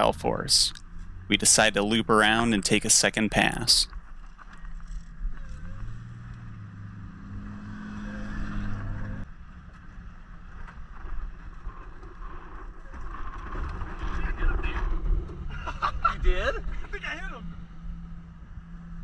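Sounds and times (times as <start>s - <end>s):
vehicle engine running: 0.0s - 11.8s.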